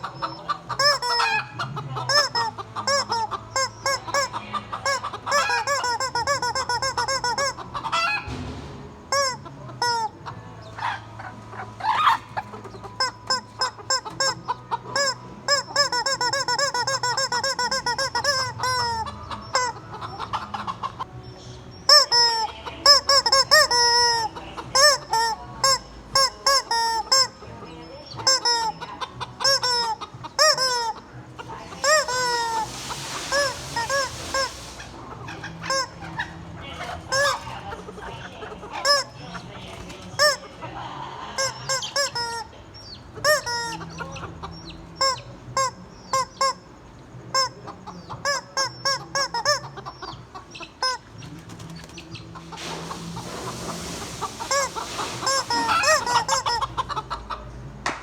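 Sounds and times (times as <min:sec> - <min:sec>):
shrill high chicken calls: 0:00.0 - 0:08.3, 0:31.8 - 0:37.5, 0:52.4 - 0:57.3
chickens clucking: 0:00.0 - 0:58.0.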